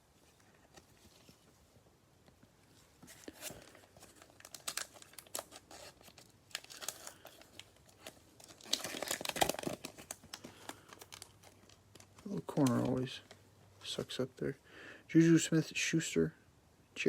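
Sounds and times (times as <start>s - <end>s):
cellophane wrapper tearing and crinkling: 3.2s - 13.4s.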